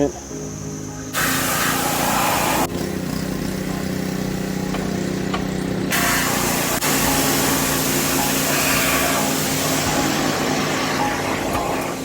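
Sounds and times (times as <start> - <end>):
water jet hissing: 1.1 - 2.7, 5.9 - 12.0
pressure washer motor running: 1.1 - 12.0.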